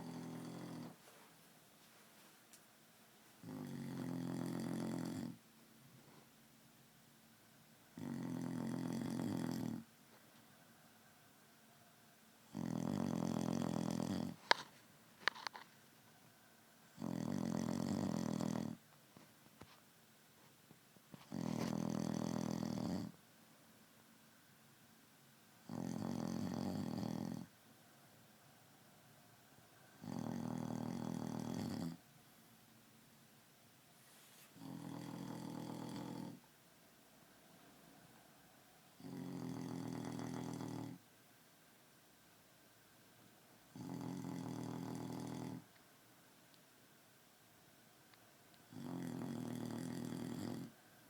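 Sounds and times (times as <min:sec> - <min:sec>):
quiet breathing: 0:00.0 - 0:06.6, 0:25.7 - 0:32.8
man snoring loudly: 0:03.5 - 0:05.3, 0:08.0 - 0:09.8, 0:12.5 - 0:14.4, 0:17.0 - 0:18.8, 0:25.7 - 0:27.4, 0:30.0 - 0:32.0, 0:34.6 - 0:36.4, 0:39.0 - 0:41.0, 0:43.8 - 0:45.6, 0:48.7 - 0:50.7.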